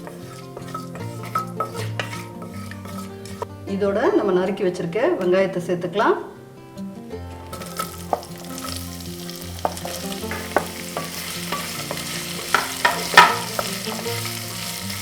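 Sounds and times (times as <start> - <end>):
onions sizzling in oil: 0.0 - 3.4, 7.4 - 15.0
spoon scraping and knocking pot: 0.0 - 3.5, 7.4 - 14.4.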